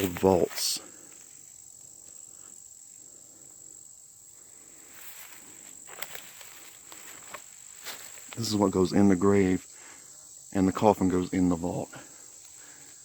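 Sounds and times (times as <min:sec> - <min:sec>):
insects droning: 0:00.0 - 0:13.0
soft crackles: 0:04.5 - 0:08.6.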